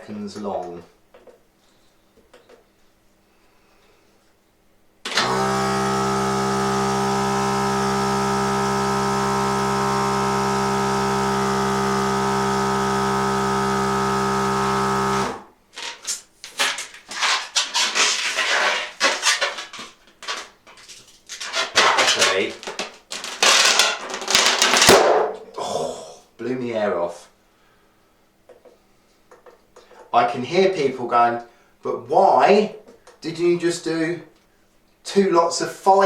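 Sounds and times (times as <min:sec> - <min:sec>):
electric balloon inflator running: 0:05.1 - 0:15.5.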